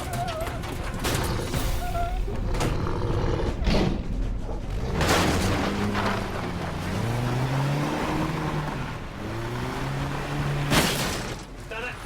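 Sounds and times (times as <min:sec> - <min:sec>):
car engine revving: 0:02.4 - 0:11.0
loud crash: 0:03.6 - 0:06.3.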